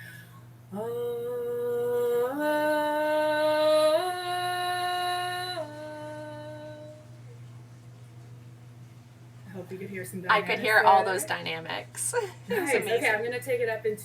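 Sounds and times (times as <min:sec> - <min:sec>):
steady low hum: 0:00.0 - 0:14.0
woman singing vocal exercise: 0:00.7 - 0:07.1.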